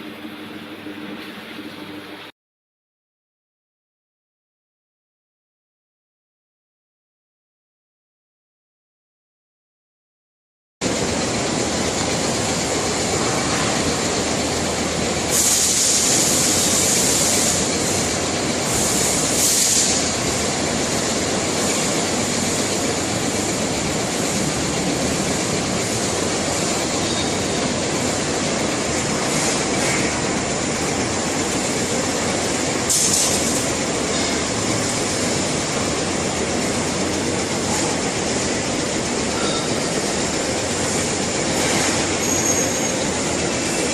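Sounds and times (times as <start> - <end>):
machine rumbling and hissing: 10.8 - 43.9.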